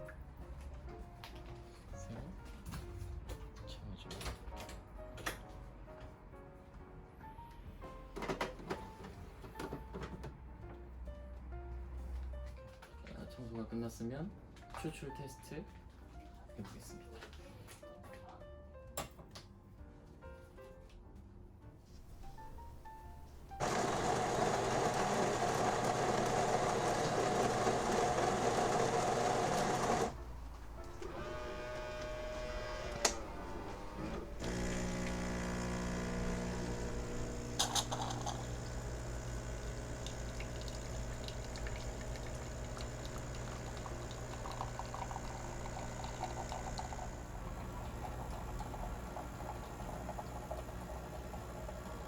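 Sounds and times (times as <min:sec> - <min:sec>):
coffee grinder running: 0:22.0 - 0:52.0
pump humming: 0:22.0 - 0:52.0
motor moving with a click: 0:23.6 - 0:39.3.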